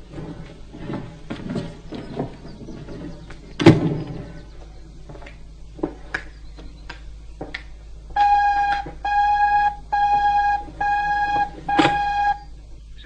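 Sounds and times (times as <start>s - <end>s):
electronic telephone ringing: 8.2s - 12.4s.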